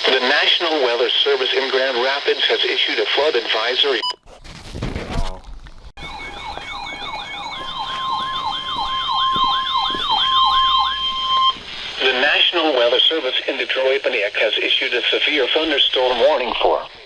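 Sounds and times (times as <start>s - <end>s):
radio static and crackle: 0.0s - 17.0s
electronic yelp siren: 6.0s - 12.6s
steady high alarm tone: 6.0s - 13.0s.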